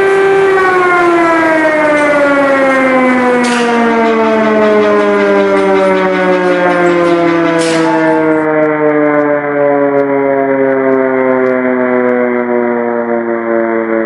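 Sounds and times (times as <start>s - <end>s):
air-raid siren falling tone: 0.0s - 14.0s.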